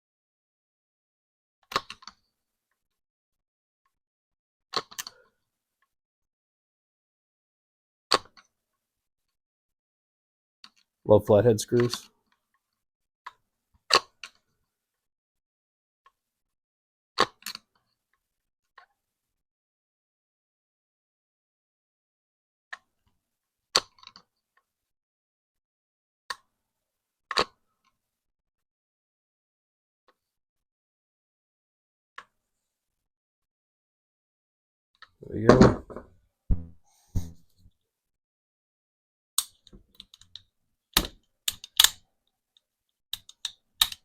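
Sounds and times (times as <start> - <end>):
sharp clicks and knocks: 43.2 - 44.0.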